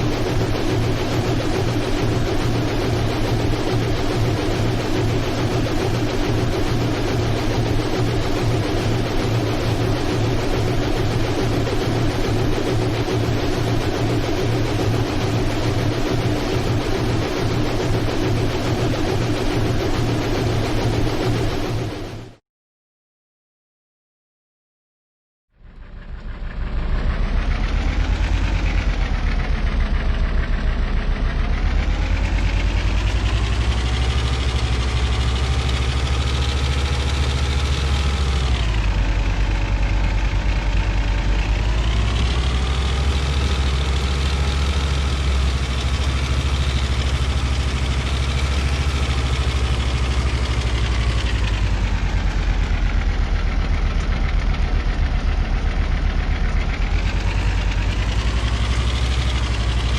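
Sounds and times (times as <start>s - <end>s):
engine idling: 25.7s - 59.9s.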